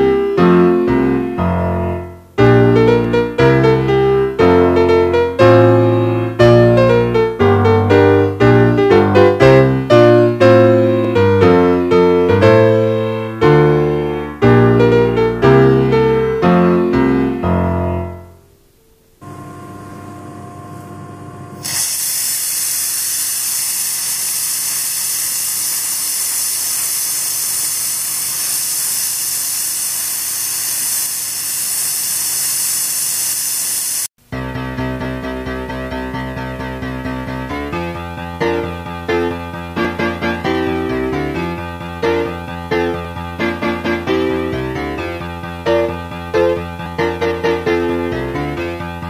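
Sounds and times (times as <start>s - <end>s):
piano music: 0.0s - 21.8s, 34.2s - 49.0s
small steam engine hissing: 21.6s - 34.1s.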